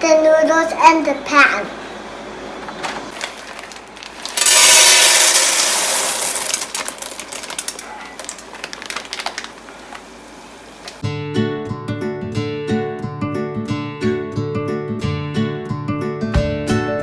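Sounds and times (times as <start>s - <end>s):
crackles of frying pasta: 3.0s - 11.0s
pasta sizzling in hot oil: 4.2s - 11.0s.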